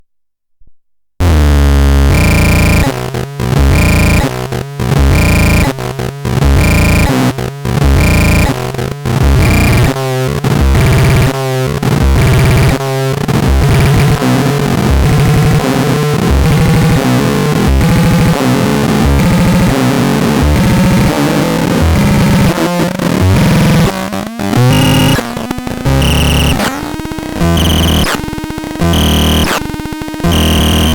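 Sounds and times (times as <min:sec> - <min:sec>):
electronic synthesizer music: 0:24.5 - 0:30.9.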